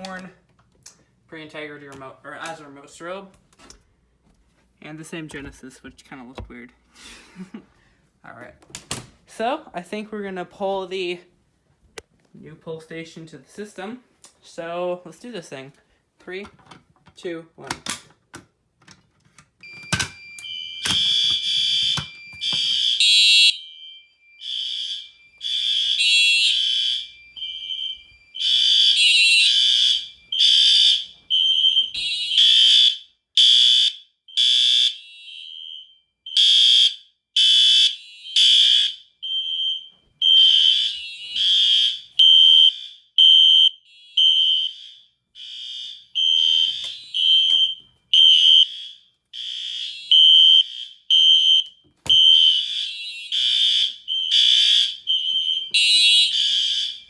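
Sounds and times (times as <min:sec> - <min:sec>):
fire alarm horns blasting: 0:19.6 - 0:57.0.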